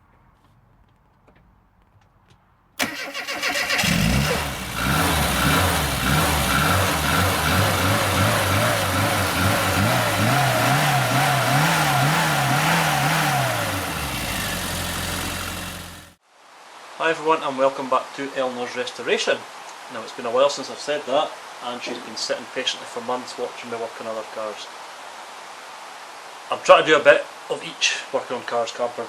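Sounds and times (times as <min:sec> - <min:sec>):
car engine cranking and starting: 0:02.8 - 0:16.2
engine revving: 0:02.8 - 0:16.2.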